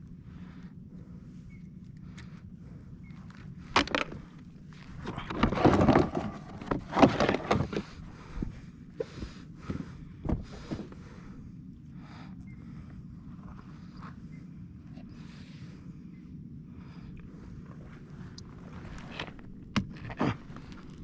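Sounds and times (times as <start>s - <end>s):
low steady hum: 0.0s - 21.0s
rustling and clattering: 3.6s - 11.1s.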